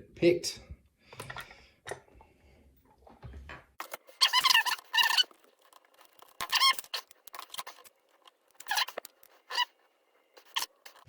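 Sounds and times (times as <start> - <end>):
metal squeaking and scraping: 3.8 - 11.0.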